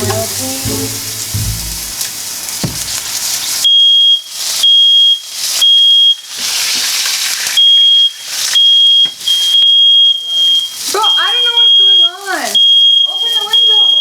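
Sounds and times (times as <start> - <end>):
pan sizzling: 0.0 - 14.0
smoke alarm beeping: 3.6 - 6.3, 7.6 - 14.0.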